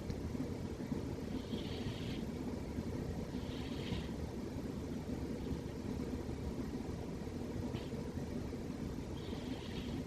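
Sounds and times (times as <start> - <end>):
soft hiss of breath: 1.2 - 2.6, 3.2 - 4.4, 9.1 - 10.0
cat snoring: 1.4 - 2.3, 3.3 - 4.2, 9.2 - 10.0.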